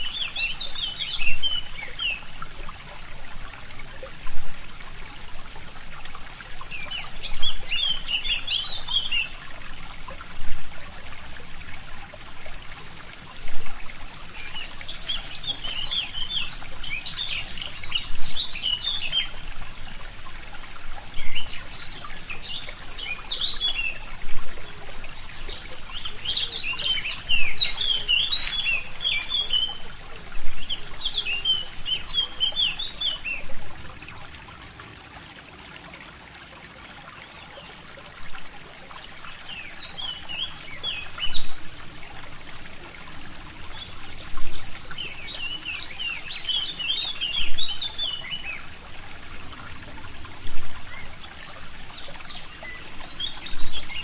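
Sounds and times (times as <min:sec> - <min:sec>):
stream trickling: 0:00.0 - 0:54.0
songbirds chirping: 0:06.3 - 0:10.3, 0:11.0 - 0:34.2, 0:43.5 - 0:54.0.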